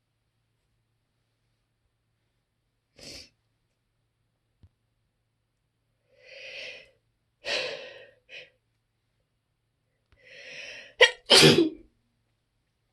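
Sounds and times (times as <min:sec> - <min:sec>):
person gasping breaths: 0:06.1 - 0:08.6, 0:10.2 - 0:11.0.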